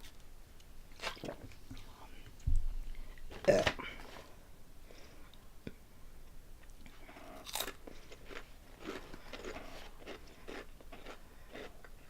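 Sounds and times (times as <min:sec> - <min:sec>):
crunchy snack being chewed: 0:07.3 - 0:11.9.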